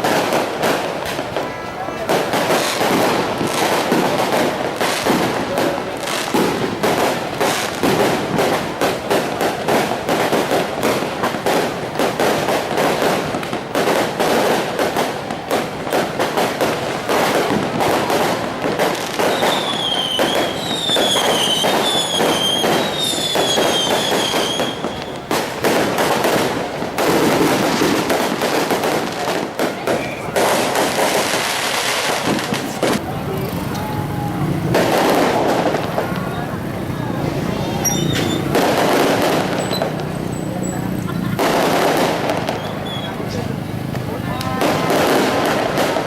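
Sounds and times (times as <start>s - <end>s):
firecrackers crackling: 0.0s - 46.0s
falling firework whistles: 18.9s - 28.9s, 37.7s - 43.5s.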